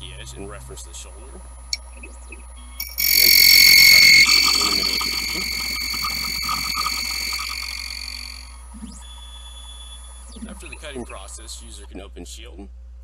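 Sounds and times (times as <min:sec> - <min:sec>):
key cutting machine whine: 0:02.8 - 0:08.4.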